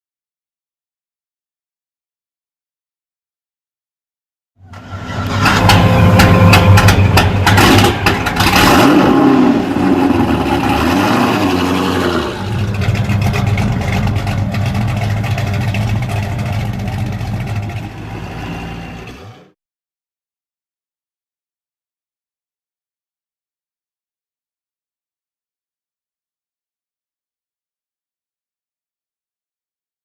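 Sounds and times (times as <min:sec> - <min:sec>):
car engine starting and revving: 0:04.6 - 0:19.6
sharp clicks and rattles: 0:05.2 - 0:08.8, 0:12.5 - 0:17.9.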